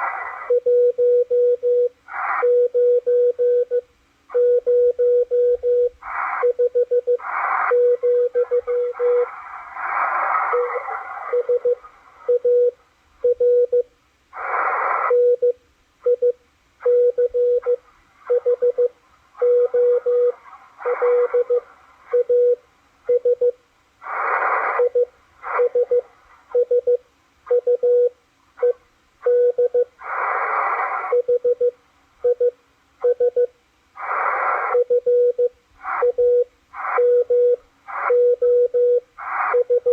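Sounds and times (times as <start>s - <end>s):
radio hiss: 0.0s - 0.7s, 2.0s - 2.7s, 5.8s - 13.2s, 14.3s - 15.5s, 16.8s - 23.2s, 23.8s - 26.6s, 29.9s - 31.5s, 33.9s - 39.9s
morse code tone: 4.4s - 9.3s, 10.5s - 13.8s, 15.1s - 23.6s, 24.3s - 30.0s, 31.0s - 33.5s, 34.6s - 39.9s.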